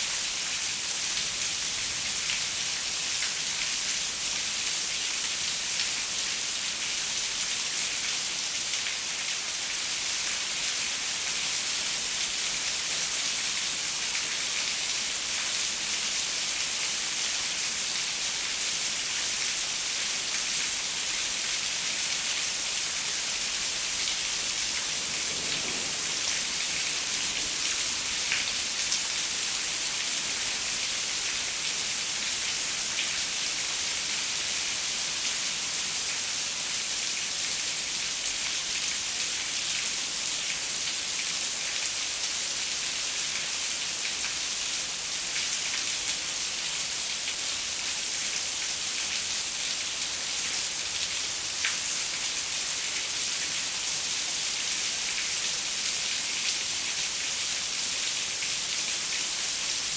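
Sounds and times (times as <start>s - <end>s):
rain on a window: 0.5s - 59.9s.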